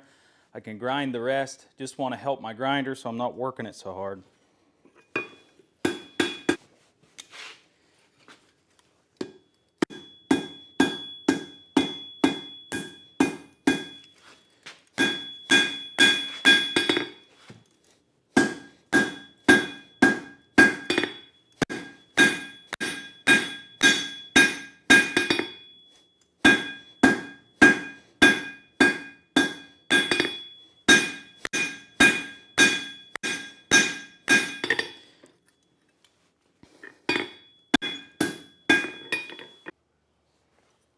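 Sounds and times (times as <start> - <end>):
hammer striking steel on anvil: 5.0 - 6.6, 9.2 - 17.3, 18.4 - 35.2, 37.1 - 39.7.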